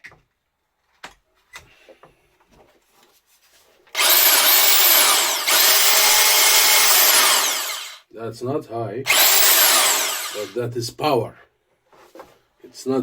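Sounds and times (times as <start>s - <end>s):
hammer drill running: 4.0s - 8.0s, 9.1s - 10.6s.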